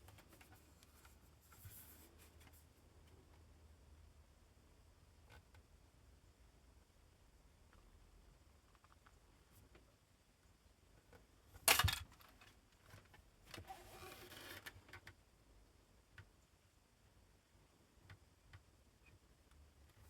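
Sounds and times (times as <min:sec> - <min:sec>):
scraping or rustling: 0:13.6 - 0:14.7.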